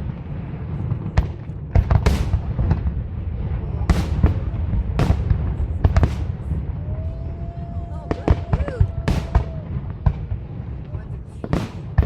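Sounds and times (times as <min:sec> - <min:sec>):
fireworks bangs: 0:00.0 - 0:12.0
fireworks crackle: 0:00.0 - 0:12.0
low rumble: 0:02.2 - 0:11.6.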